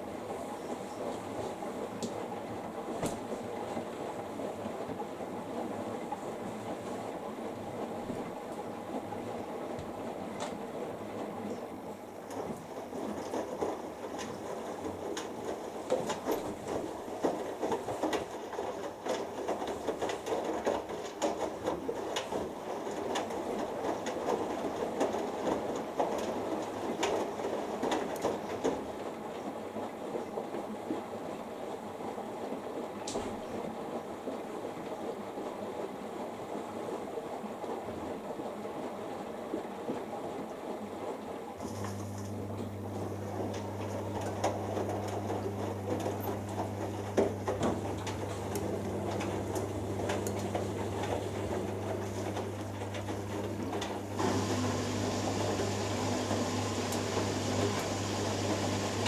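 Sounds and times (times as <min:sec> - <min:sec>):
washing machine drum turning laundry: 0:41.6 - 0:59.0.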